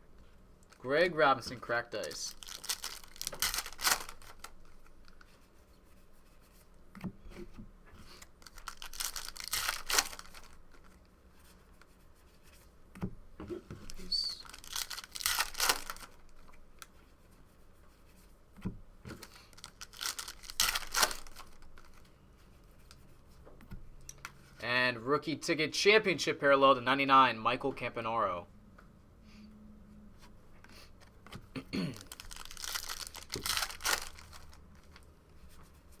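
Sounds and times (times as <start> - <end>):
foil wrappers tearing and crinkling: 1.9 - 5.2, 8.4 - 11.0, 13.8 - 16.5, 19.3 - 22.0, 31.9 - 35.0.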